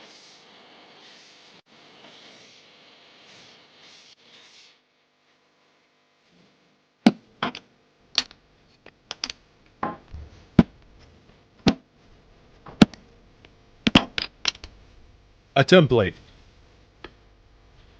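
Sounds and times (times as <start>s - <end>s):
wooden pieces knocking: 13.9s - 14.8s.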